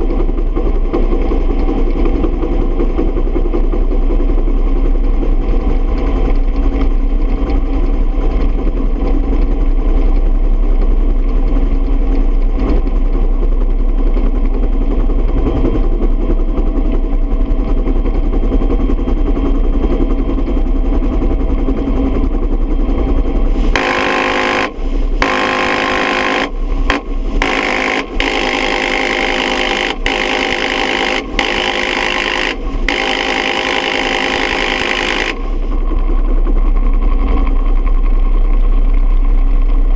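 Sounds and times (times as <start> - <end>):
helicopter turbine and rotor: 0.0 - 38.6
harsh hissy buzz: 23.6 - 35.6.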